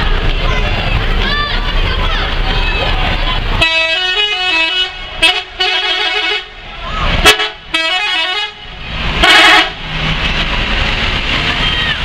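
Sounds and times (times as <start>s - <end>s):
engine and traffic rumble: 0.0s - 12.0s
musical bus air horn melody: 3.6s - 6.6s, 7.2s - 9.8s.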